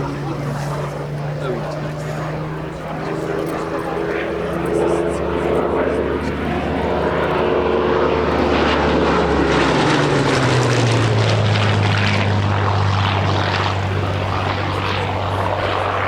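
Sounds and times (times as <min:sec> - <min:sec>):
propeller plane passing overhead: 0:00.0 - 0:16.0.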